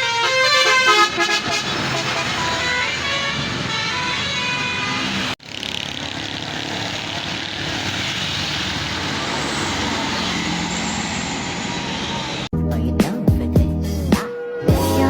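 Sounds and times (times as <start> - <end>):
bus horn playing a tune: 0.0 - 5.4
vehicle passing at speed: 1.6 - 12.5.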